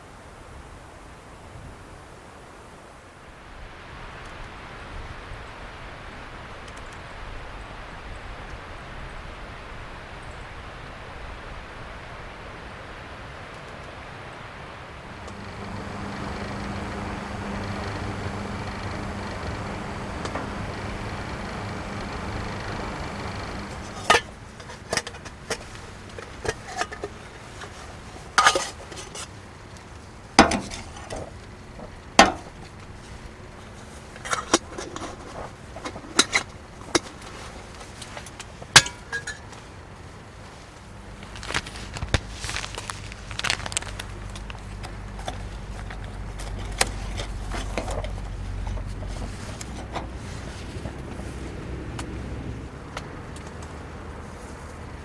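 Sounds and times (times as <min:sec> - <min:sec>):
low steady rumble: 0:15.0 - 0:34.5, 0:38.7 - 0:55.0
cookware and utensils clinking: 0:23.6 - 0:29.3, 0:38.8 - 0:39.5.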